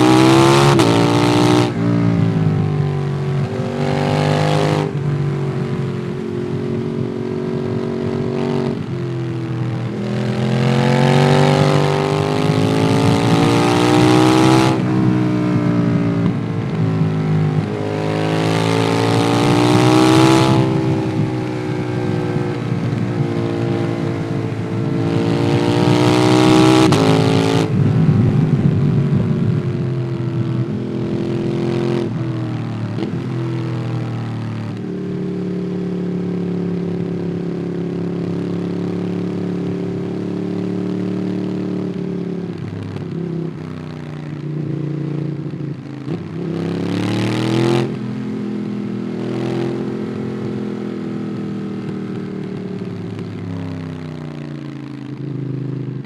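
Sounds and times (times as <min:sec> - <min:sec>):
motorcycle engine revving: 0:00.0 - 0:56.0.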